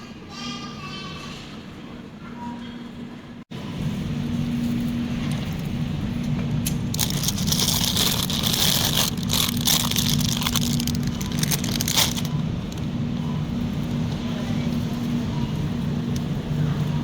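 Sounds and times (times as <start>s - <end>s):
low hum: 3.6s - 17.0s
shopping cart rolling and rattling: 6.9s - 12.8s.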